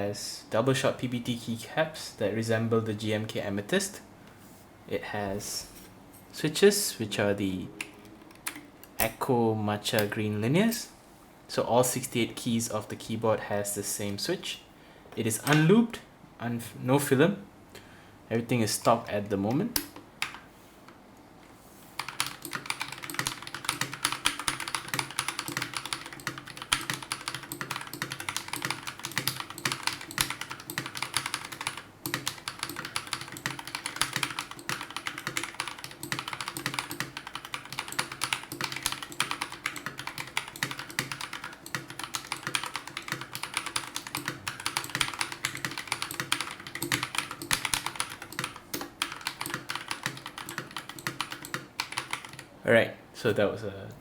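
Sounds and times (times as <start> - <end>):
mechanical keyboard typing: 22.0 - 52.5.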